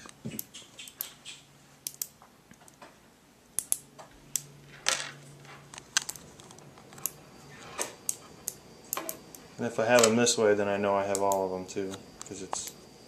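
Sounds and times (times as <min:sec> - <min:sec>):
magnet balls clicking together: 0:01.8 - 0:02.8, 0:03.6 - 0:04.5.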